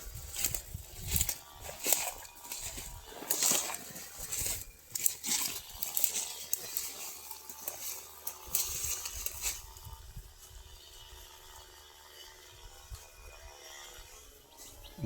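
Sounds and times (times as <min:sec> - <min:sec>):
rustling and crinkling: 0:00.0 - 0:09.9.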